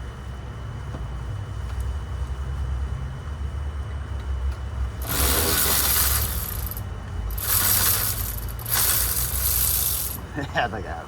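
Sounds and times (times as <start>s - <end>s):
low steady rumble: 0.0s - 11.0s
hand ratchet clicking: 5.0s - 10.2s.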